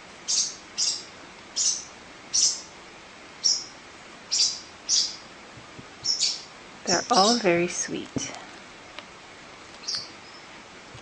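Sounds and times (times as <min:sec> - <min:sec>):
young birds peeping: 0:00.2 - 0:02.8, 0:03.4 - 0:07.6, 0:09.7 - 0:10.7.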